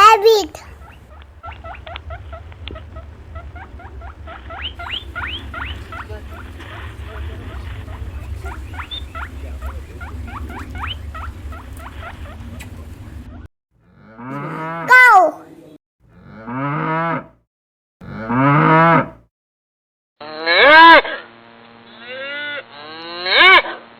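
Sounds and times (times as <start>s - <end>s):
steady low rumble: 0.5s - 13.5s
rabbits squeaking: 0.6s - 13.5s.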